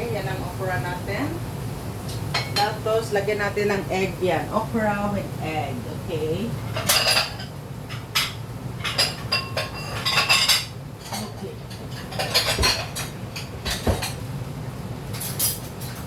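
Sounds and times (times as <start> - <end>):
utensils clinking on cookware: 6.6 - 14.2, 15.1 - 16.0.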